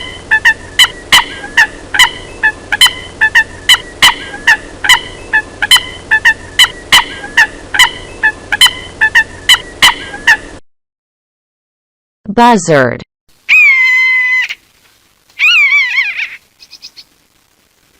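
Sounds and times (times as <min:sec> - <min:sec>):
coot calling: 0:00.0 - 0:10.5, 0:13.5 - 0:14.6, 0:15.4 - 0:17.1.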